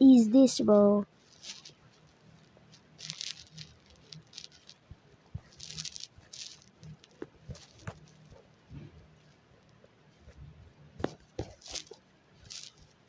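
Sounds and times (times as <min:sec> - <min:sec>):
short rustles: 0:11.0 - 0:12.9.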